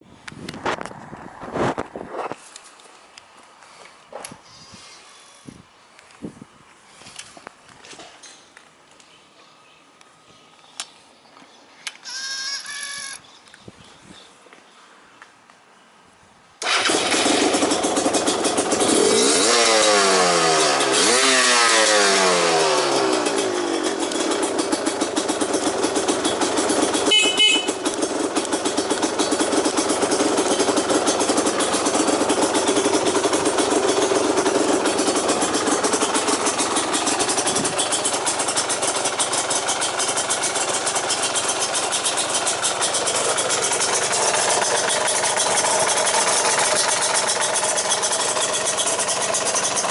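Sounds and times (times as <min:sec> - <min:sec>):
motorcycle engine revving and idling: 0:16.6 - 0:49.9.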